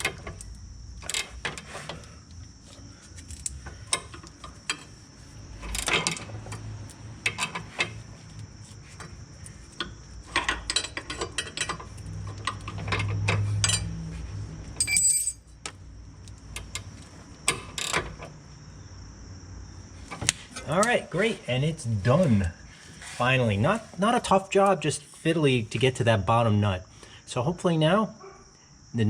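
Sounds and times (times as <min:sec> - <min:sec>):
ratcheting wrench clicking: 0:05.6 - 0:07.9
short metallic ring: 0:14.8 - 0:15.4.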